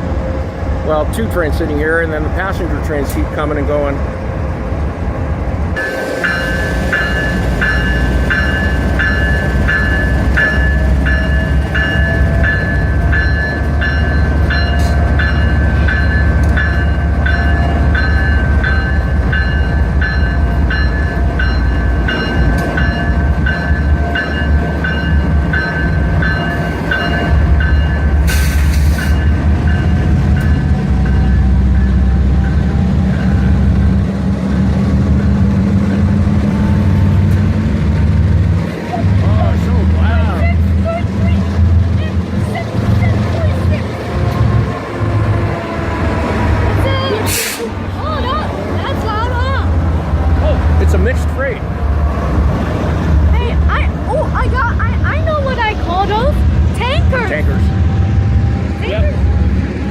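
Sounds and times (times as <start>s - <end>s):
diesel locomotive rumble: 0.0s - 59.9s
railroad bell ringing: 5.8s - 37.5s.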